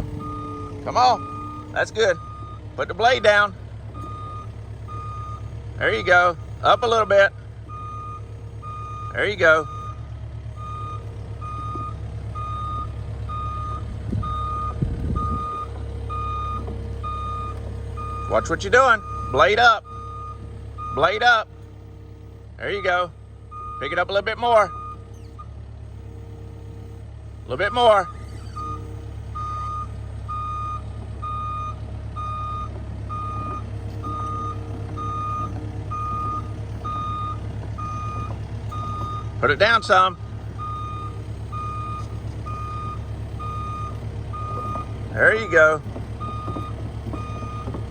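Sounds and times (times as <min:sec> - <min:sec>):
low knocks and rumbles: 0:00.0 - 0:05.8, 0:09.9 - 0:18.1, 0:32.1 - 0:47.9
excavator engine running: 0:00.0 - 0:47.9
excavator travel alarm beeping: 0:00.0 - 0:47.9.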